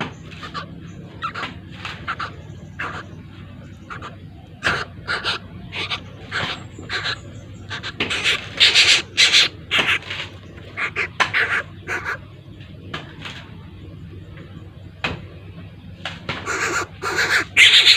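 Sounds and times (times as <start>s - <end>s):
raspy hissing chick begging calls: 3.8s - 10.1s, 10.7s - 12.2s, 16.4s - 17.9s.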